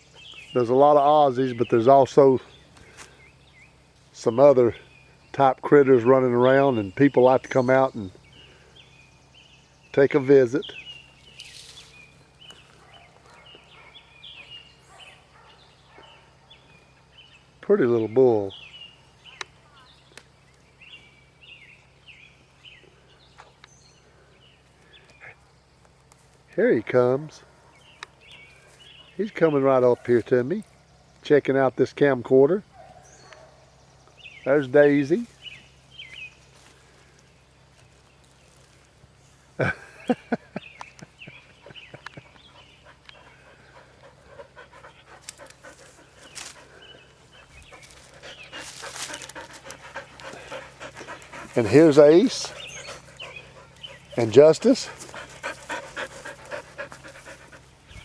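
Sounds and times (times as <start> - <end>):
dog panting: 41.2 - 58.0.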